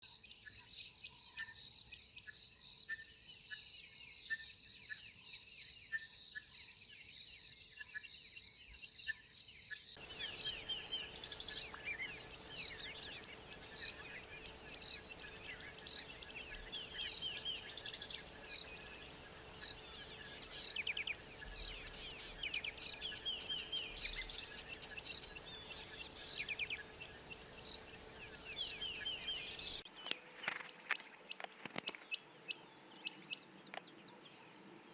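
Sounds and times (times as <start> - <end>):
fast pulsing bird trill: 10.0 - 29.8
birds chirping and trilling: 10.0 - 34.9.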